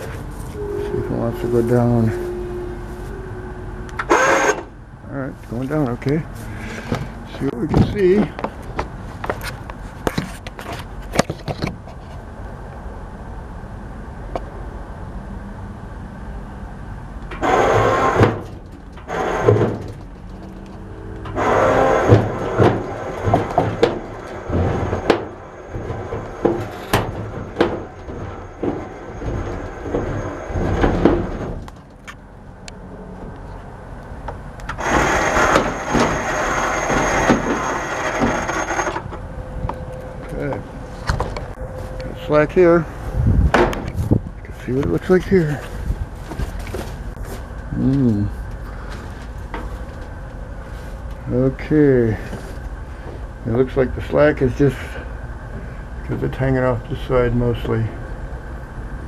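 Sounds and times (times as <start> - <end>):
electric winch chain rattling: 0.0 - 4.8, 17.3 - 32.7, 34.6 - 40.5
metal clanks and knocks: 17.3 - 32.4, 34.7 - 39.8, 43.5 - 44.1.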